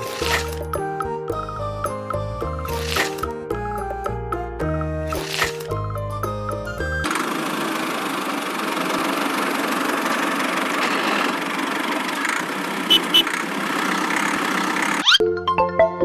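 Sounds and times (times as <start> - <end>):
music: 0.0 - 7.1, 15.2 - 16.0
small motor idling: 7.1 - 15.0.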